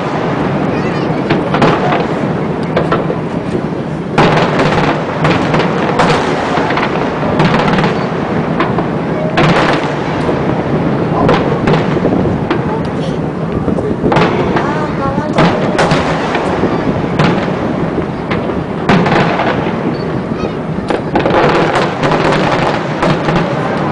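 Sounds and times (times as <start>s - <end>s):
fireworks booming and crackling: 0.0s - 23.9s.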